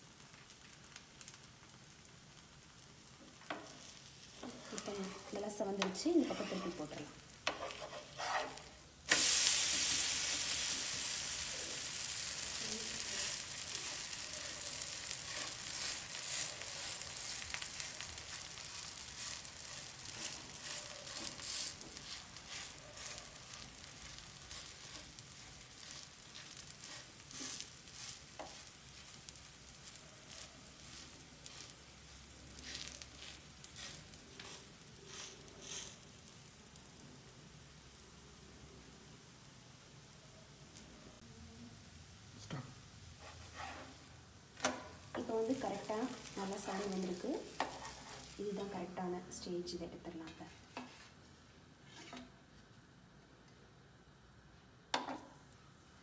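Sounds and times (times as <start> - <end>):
oil crackles: 0.0 - 7.5, 8.8 - 39.0, 45.0 - 49.0
dosa sizzling in oil: 0.0 - 52.9.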